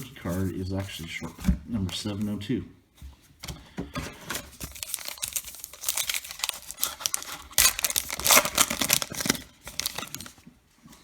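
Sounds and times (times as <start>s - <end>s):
wrapper tearing and crinkling: 4.6s - 10.4s.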